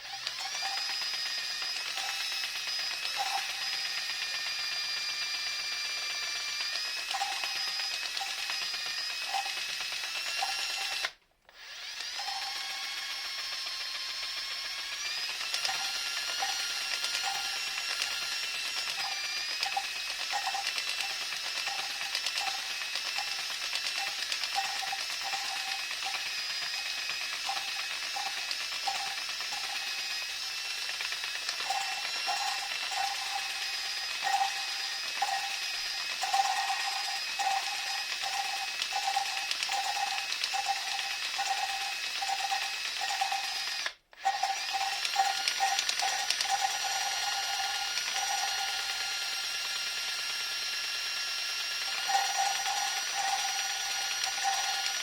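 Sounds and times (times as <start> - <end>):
electric drill motor whining: 0.0 - 55.0.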